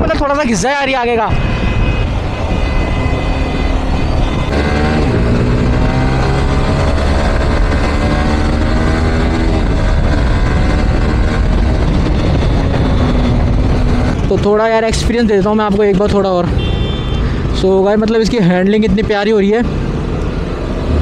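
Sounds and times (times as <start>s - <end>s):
wind rumble on microphone: 0.0s - 16.1s
motorcycle engine under throttle: 4.2s - 14.4s.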